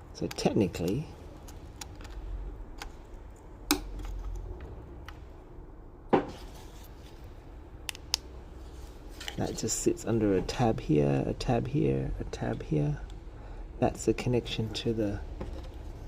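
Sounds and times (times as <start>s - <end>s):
plastic parts clicking and tapping: 0.2s - 3.1s.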